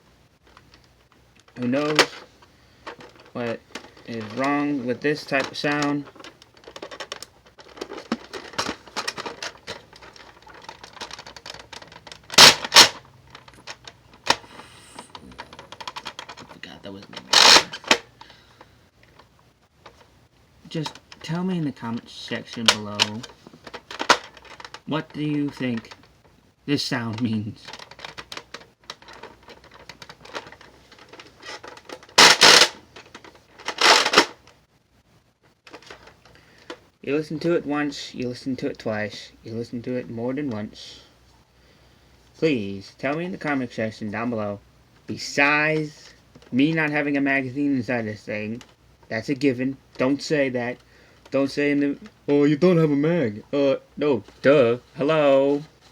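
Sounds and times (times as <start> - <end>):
toy blaster clicking: 32.2 - 32.8.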